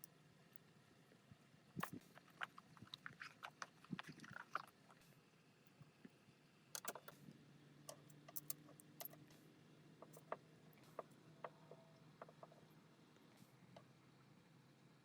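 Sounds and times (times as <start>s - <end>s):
faint clicks and taps: 6.8s - 7.2s, 7.9s - 9.2s, 10.0s - 12.7s.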